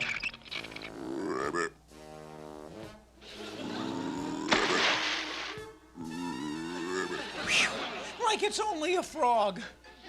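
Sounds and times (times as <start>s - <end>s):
cartoon frog croak: 0.0s - 1.8s, 6.0s - 7.4s
background music: 0.0s - 10.0s.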